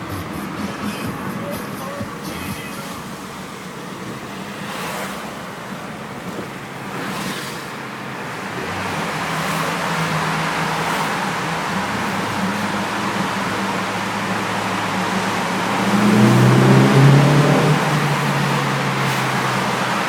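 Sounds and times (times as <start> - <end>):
car engine accelerating: 0.0 - 20.0
road and wind rush: 0.0 - 20.0.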